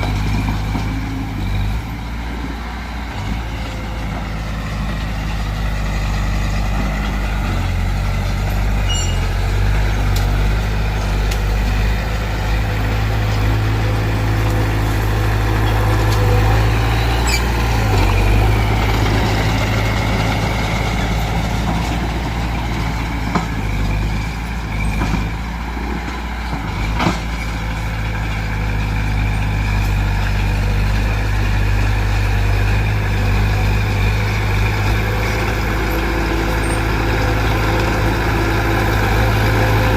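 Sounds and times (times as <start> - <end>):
heavy diesel engines running: 0.0 - 39.9
metallic clanks: 8.8 - 9.5.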